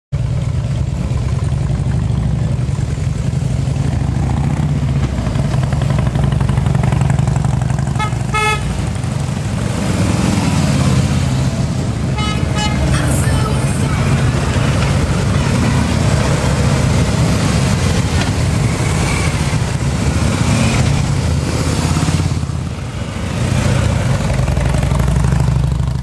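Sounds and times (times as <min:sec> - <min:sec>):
motorcycle engine rumbling: 0:00.2 - 0:26.0
motorcycle horn toots: 0:07.9 - 0:08.8, 0:12.2 - 0:13.2.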